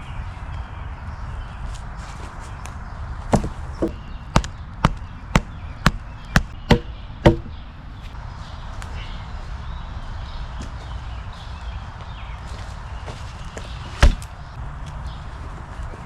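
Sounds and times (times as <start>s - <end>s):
axe chopping into log: 3.3s - 7.6s, 14.0s - 14.3s.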